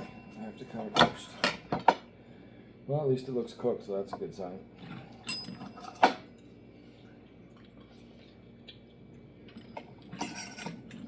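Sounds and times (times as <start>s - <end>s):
utensils or dishes clattering: 10.1s - 11.0s.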